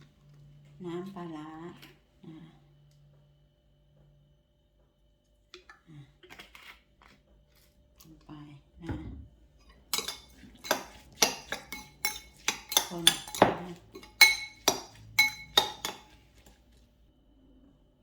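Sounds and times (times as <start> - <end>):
utensil clinking against bowl: 9.6 - 16.6.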